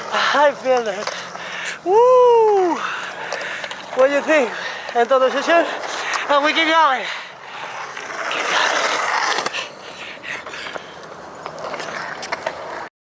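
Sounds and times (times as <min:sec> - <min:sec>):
skateboard clicks and knocks: 0:00.0 - 0:12.9
skateboard wheels rolling on concrete: 0:00.0 - 0:12.9.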